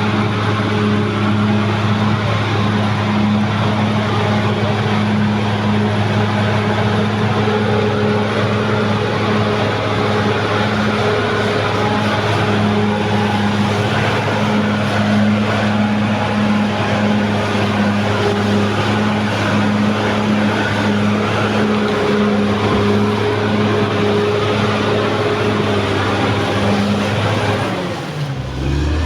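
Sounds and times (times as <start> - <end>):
bulldozer diesel engine running: 0.0 - 29.0.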